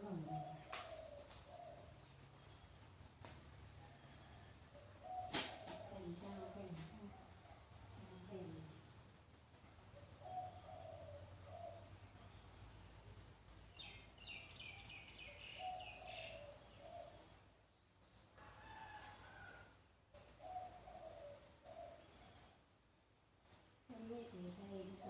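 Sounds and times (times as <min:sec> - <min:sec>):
birds calling: 0:00.0 - 0:08.8, 0:09.7 - 0:12.9, 0:13.7 - 0:18.2, 0:20.2 - 0:22.7.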